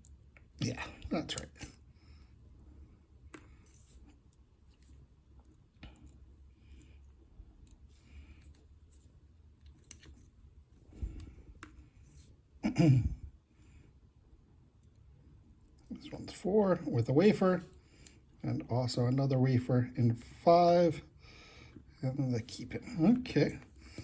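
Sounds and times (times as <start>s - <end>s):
small metal parts clicking: 9.6s - 10.3s.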